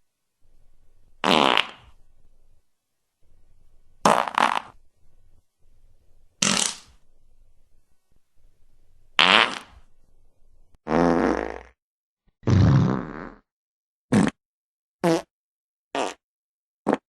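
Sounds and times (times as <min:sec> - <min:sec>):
short buzzing farts: 0:01.2 - 0:02.0, 0:04.0 - 0:04.8, 0:06.4 - 0:06.9, 0:09.2 - 0:09.8, 0:10.8 - 0:11.8, 0:14.1 - 0:14.4, 0:15.0 - 0:15.3, 0:16.0 - 0:16.2.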